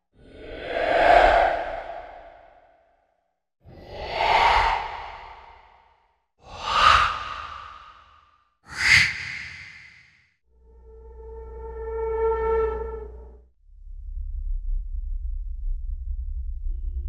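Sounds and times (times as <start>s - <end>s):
breathy sigh-like sound effects: 6.4s - 8.1s.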